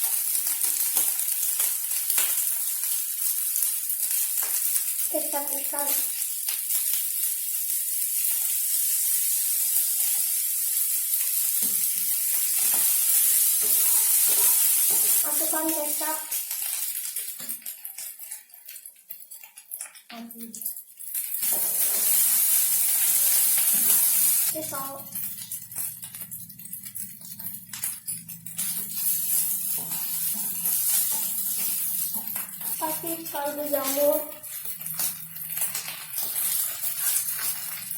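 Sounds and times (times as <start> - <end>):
rice sizzling in hot oil: 0.0 - 37.9
spatula scraping a pan: 11.6 - 15.2, 21.2 - 24.5, 28.4 - 33.6
spatula scraping pan: 28.4 - 37.9.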